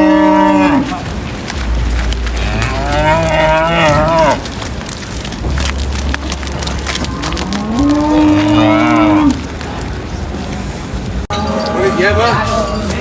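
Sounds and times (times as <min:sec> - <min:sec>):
cattle mooing: 0:00.0 - 0:01.0, 0:02.2 - 0:04.5, 0:06.1 - 0:09.6
low steady rumble: 0:00.0 - 0:13.0.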